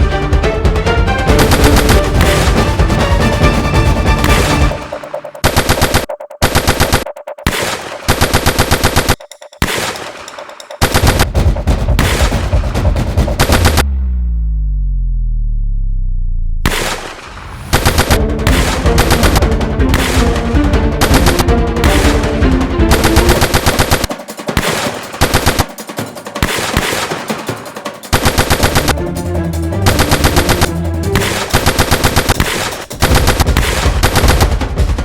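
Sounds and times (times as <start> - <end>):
automatic gunfire bursts: 5.4 - 10.0, 10.8 - 11.3, 13.4 - 13.8, 17.7 - 18.2, 18.9 - 20.3, 21.0 - 22.2, 22.9 - 25.7, 28.1 - 28.9, 29.9 - 34.6
deep low rumble: 12.7 - 16.7.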